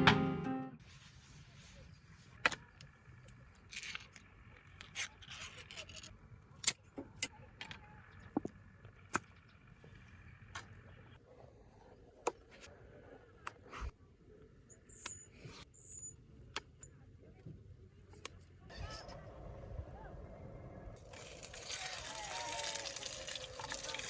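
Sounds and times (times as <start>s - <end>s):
small hard objects clicking: 21.1s - 24.0s.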